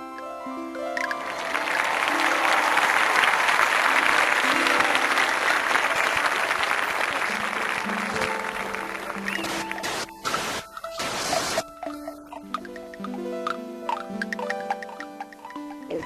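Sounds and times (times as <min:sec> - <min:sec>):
applause: 0:01.0 - 0:10.6.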